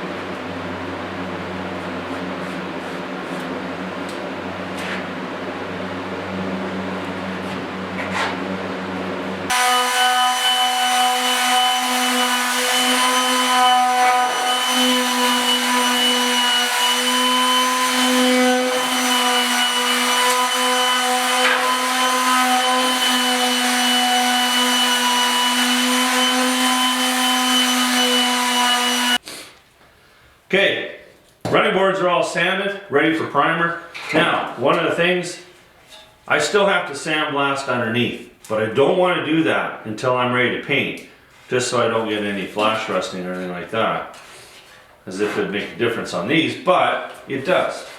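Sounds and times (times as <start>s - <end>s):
power sander on steel: 9.4s - 29.2s.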